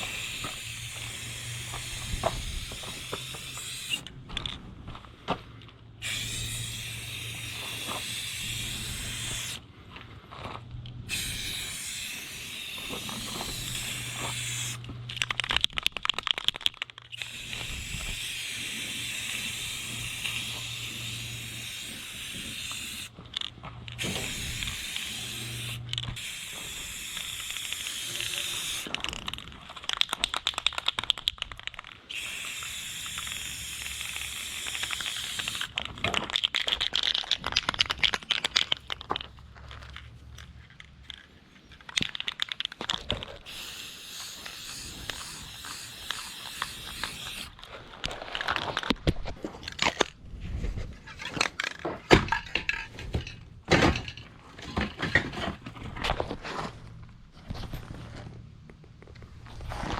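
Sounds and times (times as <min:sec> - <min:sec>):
aerosol can spraying: 0:00.0 - 0:04.1, 0:06.0 - 0:09.6, 0:11.1 - 0:14.8, 0:17.1 - 0:23.1, 0:24.0 - 0:28.9, 0:32.1 - 0:35.8, 0:43.4 - 0:47.6
mixing ball rattling in can: 0:11.9 - 0:21.3, 0:27.2 - 0:50.1.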